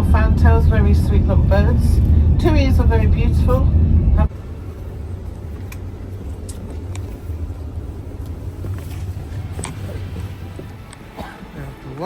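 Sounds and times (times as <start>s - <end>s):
bus engine rumble: 0.0s - 12.0s
road noise: 0.0s - 12.0s.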